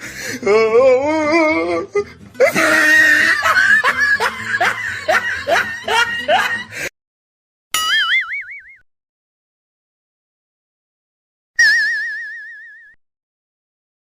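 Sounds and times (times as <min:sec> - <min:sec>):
breathy snickering laugh: 0:02.4 - 0:06.9.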